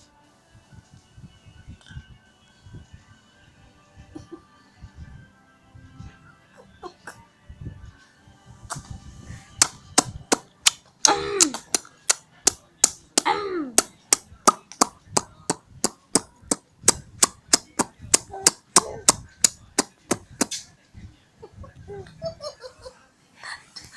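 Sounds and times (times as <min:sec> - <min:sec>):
sharp smacks: 0:08.7 - 0:08.9, 0:09.6 - 0:20.7.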